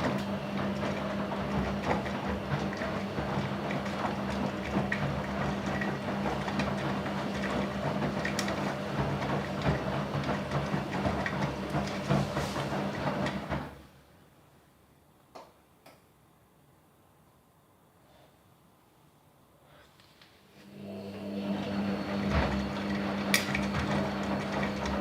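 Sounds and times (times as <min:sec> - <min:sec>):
drain pump humming: 0:00.0 - 0:13.6, 0:20.8 - 0:25.0.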